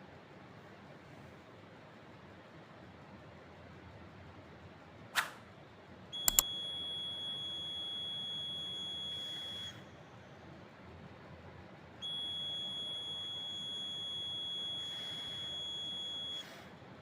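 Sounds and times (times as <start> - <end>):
sharp clicks: 6.2 - 6.5
smoke alarm beep: 6.2 - 9.8, 12.0 - 16.5.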